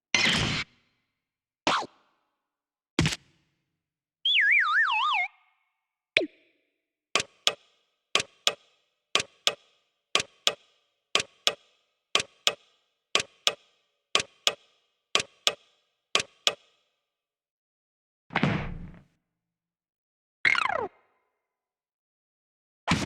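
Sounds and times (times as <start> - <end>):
clock ticking: 7.2 - 16.6.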